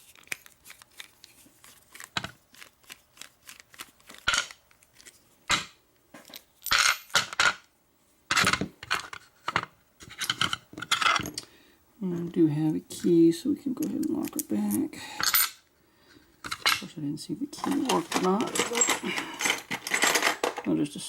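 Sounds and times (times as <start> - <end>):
metal scrapes and rattles: 17.6 - 20.7.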